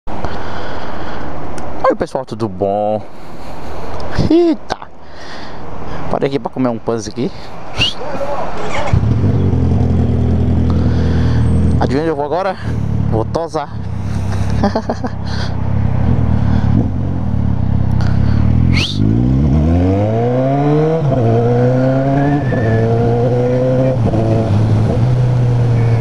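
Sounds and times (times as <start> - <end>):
motorcycle engine revving: 8.6 - 26.0.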